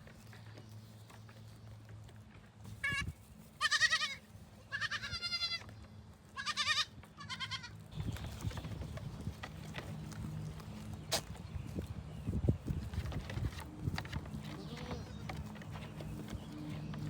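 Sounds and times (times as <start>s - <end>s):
goats bleating: 3.6s - 5.7s, 6.3s - 7.8s
low scuffling noises: 7.8s - 17.0s.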